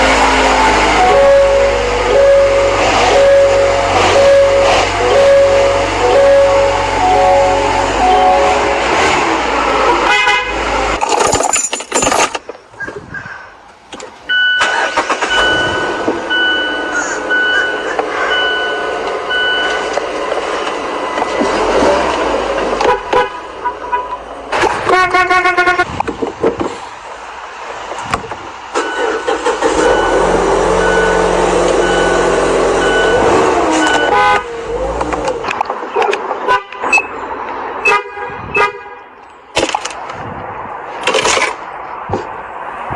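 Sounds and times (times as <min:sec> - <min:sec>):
vehicle horn: 0:00.0 - 0:11.0, 0:22.8 - 0:25.9, 0:29.8 - 0:34.6, 0:36.4 - 0:37.1, 0:37.8 - 0:39.1
rough noise: 0:00.0 - 0:12.4
high single-pitched beep: 0:00.6 - 0:09.4.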